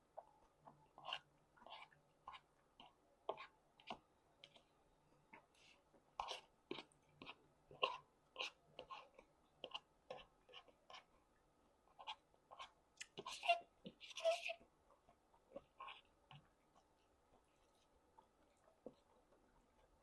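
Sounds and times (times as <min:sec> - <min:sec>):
person chewing food: 0:12.0 - 0:19.2.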